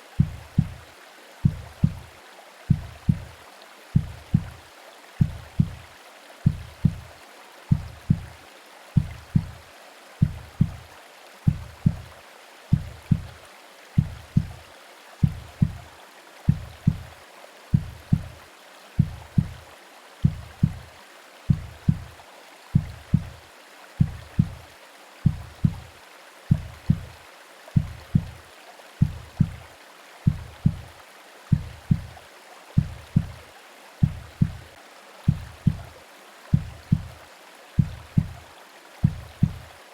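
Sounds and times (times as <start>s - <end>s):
white noise hiss: 0.0s - 39.9s
heartbeat thumps: 0.1s - 2.1s, 2.7s - 3.4s, 4.0s - 4.6s, 5.2s - 7.1s, 7.7s - 8.4s, 9.0s - 9.6s, 10.2s - 10.9s, 11.5s - 13.4s, 14.0s - 15.9s, 16.5s - 18.4s, 19.0s - 20.9s, 21.5s - 23.4s, 24.0s - 24.6s, 25.2s - 25.9s, 26.5s - 27.2s, 27.8s - 28.4s, 29.0s - 29.7s, 30.3s - 32.2s, 32.8s - 33.4s, 34.0s - 37.2s, 37.8s - 39.7s.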